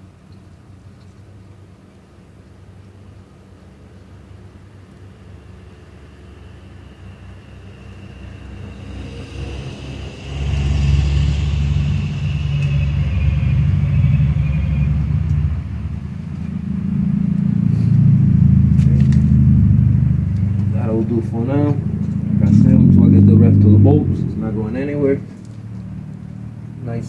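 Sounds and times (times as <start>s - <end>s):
vehicle engine rumble: 0.0s - 27.0s
high whistle-like tone: 10.9s - 15.1s.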